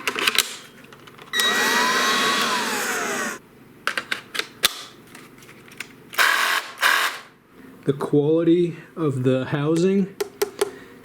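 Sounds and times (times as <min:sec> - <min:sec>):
leaf blower running: 0:01.4 - 0:03.4.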